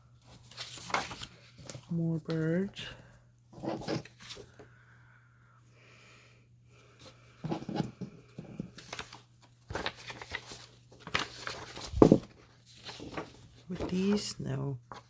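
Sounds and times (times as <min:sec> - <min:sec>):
paper cards rustling and tapping: 0:00.3 - 0:02.6, 0:07.4 - 0:15.0.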